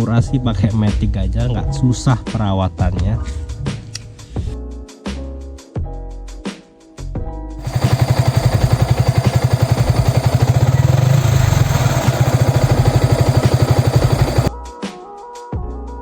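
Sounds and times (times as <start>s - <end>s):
motorcycle engine idling: 7.6s - 14.5s.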